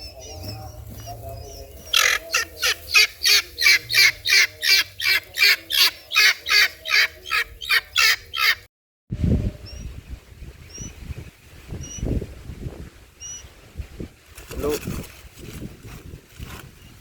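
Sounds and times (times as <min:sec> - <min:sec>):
bird squawking: 0:00.0 - 0:08.7.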